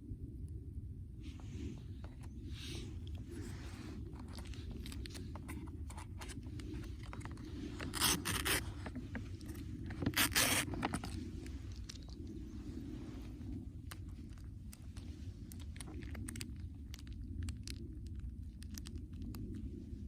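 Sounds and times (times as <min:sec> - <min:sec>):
steady low rumble: 0:00.0 - 0:20.0
raspy scraping: 0:01.4 - 0:17.0.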